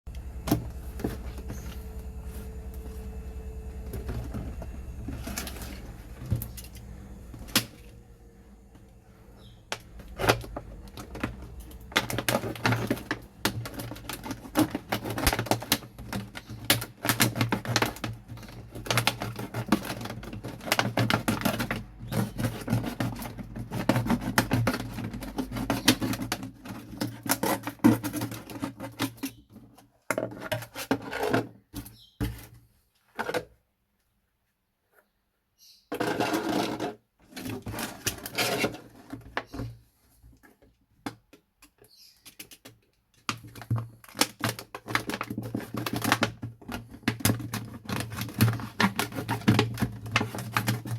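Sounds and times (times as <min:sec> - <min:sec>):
low steady hum: 0:00.1 - 0:20.6
plastic bottles clicking and tapping: 0:09.4 - 0:29.3, 0:40.4 - 0:50.9.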